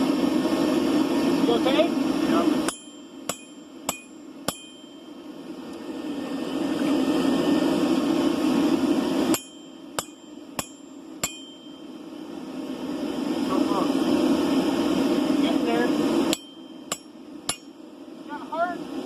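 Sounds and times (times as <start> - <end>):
hammer striking anvil: 2.7 - 5.1, 9.3 - 11.8, 16.3 - 17.8.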